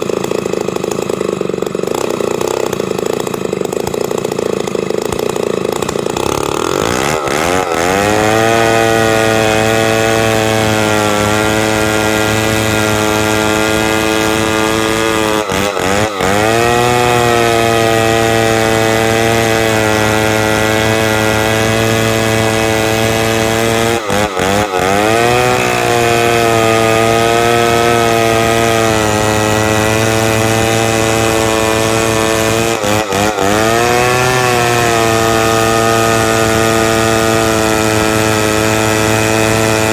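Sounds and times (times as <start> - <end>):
chainsaw ripping timber: 0.0 - 39.9.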